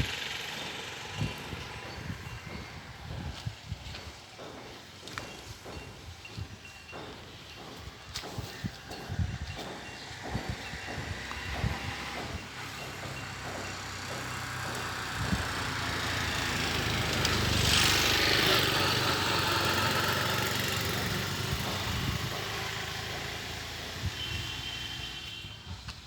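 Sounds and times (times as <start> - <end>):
motor vehicle passing by: 0.0 - 4.0, 9.6 - 25.4.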